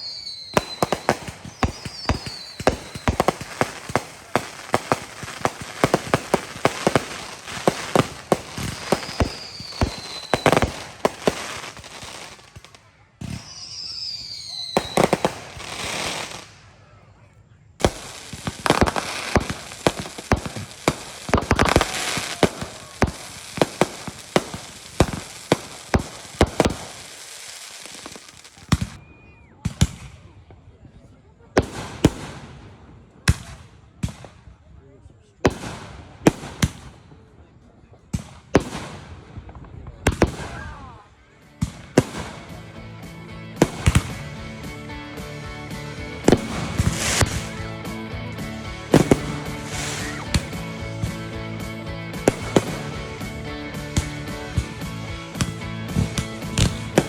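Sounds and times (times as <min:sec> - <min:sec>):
fireworks banging: 0:00.0 - 0:16.7, 0:17.8 - 0:29.0, 0:31.6 - 0:32.6, 0:38.0 - 0:40.9, 0:41.6 - 0:42.8, 0:43.6 - 0:57.0
fireworks crackling: 0:00.0 - 0:17.1, 0:17.8 - 0:29.0, 0:31.6 - 0:34.6, 0:35.3 - 0:37.3, 0:37.9 - 0:57.0
music: 0:14.4 - 0:16.4, 0:18.2 - 0:27.9, 0:41.1 - 0:57.0.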